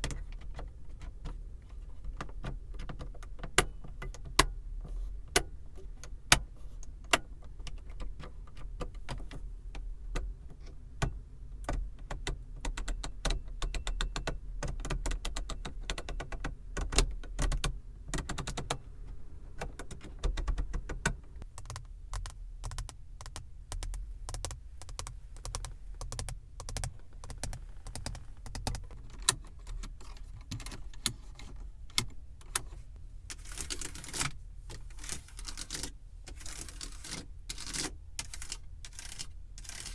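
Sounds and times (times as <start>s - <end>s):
low steady rumble: 17.1s - 39.9s
fingers tapping on car surfaces: 19.7s - 29.0s
scratching: 23.9s - 29.0s.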